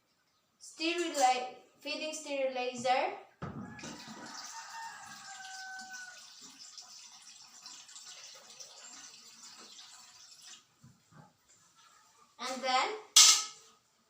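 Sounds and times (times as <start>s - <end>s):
water running into a pot: 3.8s - 10.8s.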